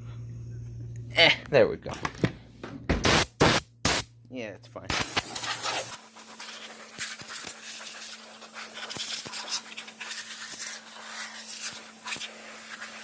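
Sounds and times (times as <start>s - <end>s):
faint steady hum: 0.0s - 2.8s
air blow gun hissing: 4.9s - 13.0s.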